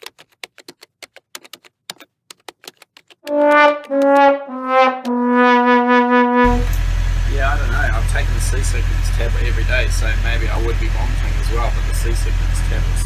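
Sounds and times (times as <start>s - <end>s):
typewriter-style clicking: 0.0s - 4.3s
sad trombone sound effect: 3.3s - 6.5s.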